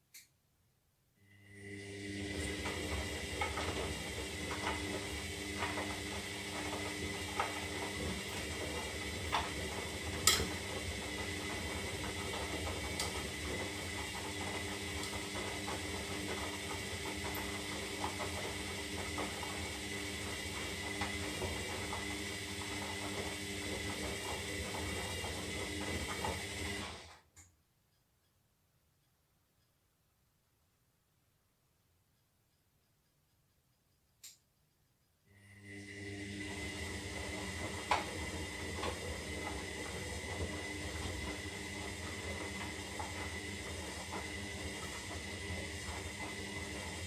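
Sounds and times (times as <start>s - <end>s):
washing machine running: 1.4s - 27.2s, 35.3s - 47.0s.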